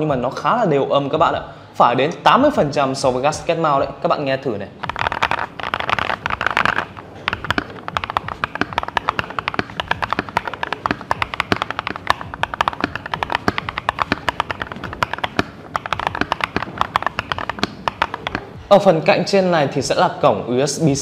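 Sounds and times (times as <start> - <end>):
fast typing on mechanical keyboard: 4.8 - 18.6.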